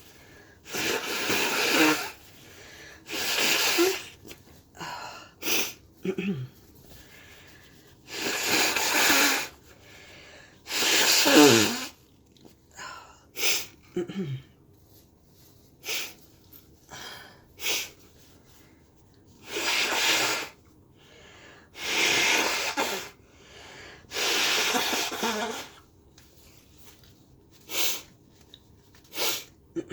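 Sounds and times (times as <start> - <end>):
person sniffing: 0.6 - 2.3, 2.9 - 4.2, 7.1 - 12.0, 15.8 - 16.2, 17.5 - 18.0, 23.9 - 25.8, 27.6 - 28.1, 29.1 - 29.6
person sneezing: 0.7 - 2.2, 3.1 - 4.2, 10.7 - 12.0, 21.8 - 23.2, 24.1 - 25.8.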